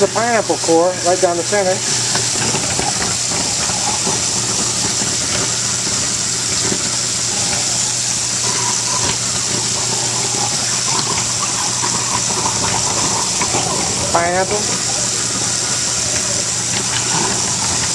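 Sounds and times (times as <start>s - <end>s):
garbage disposal motor hum: 0.0s - 17.9s
tap water pouring: 0.0s - 17.9s.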